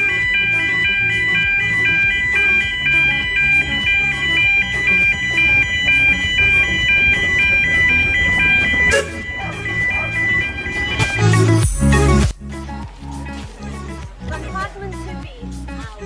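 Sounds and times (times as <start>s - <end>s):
chiming melody: 0.0s - 12.2s
pulsing bass line: 0.0s - 16.0s.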